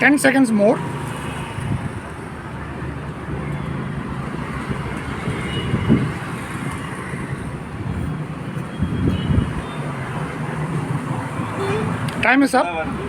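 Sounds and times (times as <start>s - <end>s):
low rumble of road traffic: 0.0s - 13.0s.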